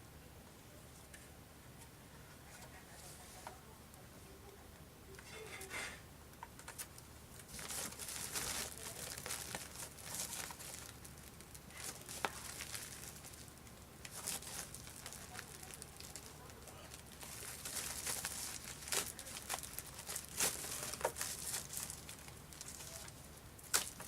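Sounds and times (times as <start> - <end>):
plastic packaging crinkling: 6.6 - 24.0.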